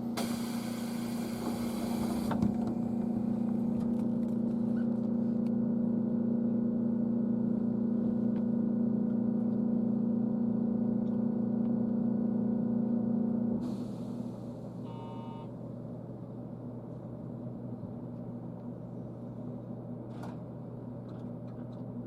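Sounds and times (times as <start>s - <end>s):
electric train equipment hum: 0.0s - 21.1s.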